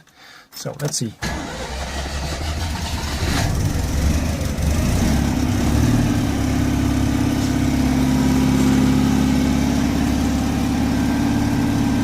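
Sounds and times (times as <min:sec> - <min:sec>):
engine idling: 0:01.2 - 0:12.0.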